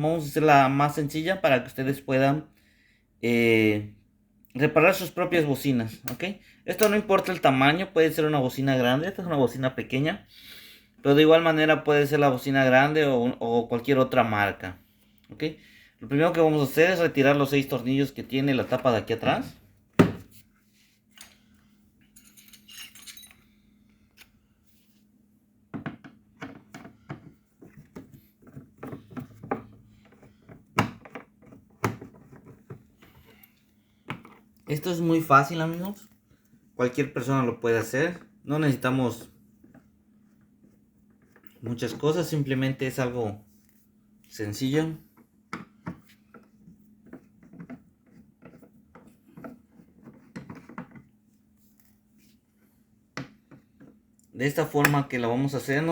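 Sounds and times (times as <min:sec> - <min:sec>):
faint steady hum: 0:00.0 - 0:55.9
metallic jingle of screws: 0:22.2 - 0:23.5.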